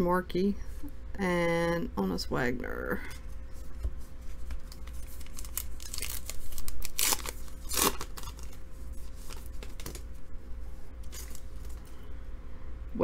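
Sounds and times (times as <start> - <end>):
cards sliding and rustling: 3.6 - 10.1.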